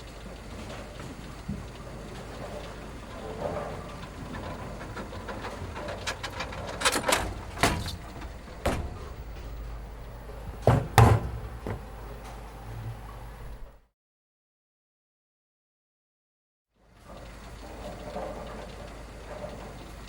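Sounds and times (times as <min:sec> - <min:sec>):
low background hum: 0:00.0 - 0:13.9
sharp knocks: 0:07.6 - 0:09.6, 0:10.6 - 0:11.9.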